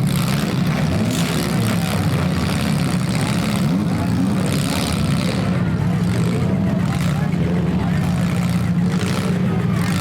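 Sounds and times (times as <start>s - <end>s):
car engines revving: 0.0s - 10.0s.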